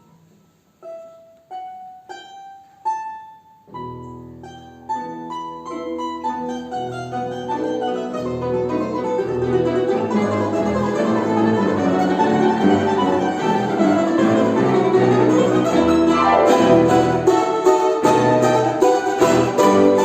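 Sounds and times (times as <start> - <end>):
string ensemble playing: 9.6 - 20.0.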